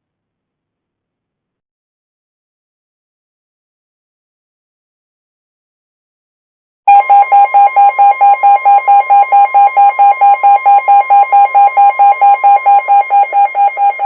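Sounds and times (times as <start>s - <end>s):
radio alarm beeping rapidly: 6.9s - 14.0s
steady alarm tone: 6.9s - 14.0s.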